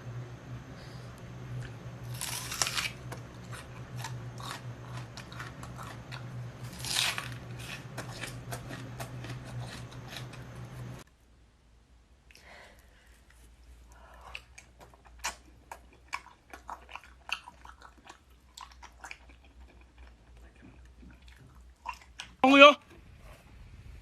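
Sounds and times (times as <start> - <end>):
steady low hum: 0.0 - 24.0
chewing crunchy food: 1.6 - 11.0, 13.9 - 22.4.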